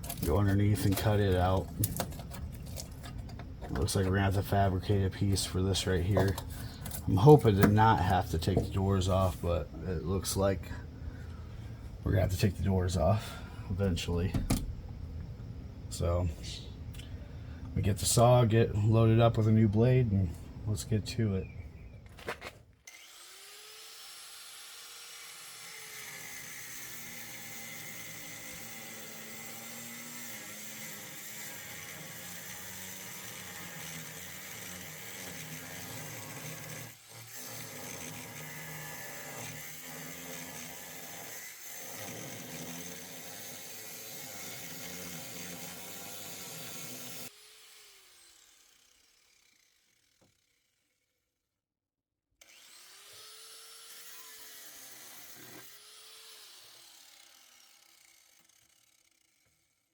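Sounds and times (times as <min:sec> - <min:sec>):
power saw cutting sheet metal: 0:00.0 - 0:09.6, 0:22.9 - 0:49.4, 0:52.4 - 0:59.5.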